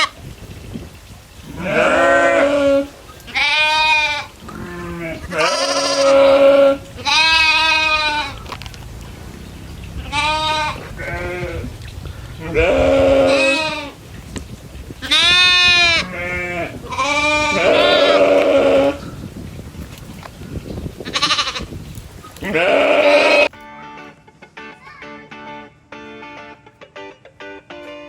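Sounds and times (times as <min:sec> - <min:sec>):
goats bleating: 0:01.5 - 0:08.4, 0:10.0 - 0:11.7, 0:12.4 - 0:14.0, 0:15.0 - 0:19.0, 0:21.0 - 0:21.7, 0:22.4 - 0:23.5.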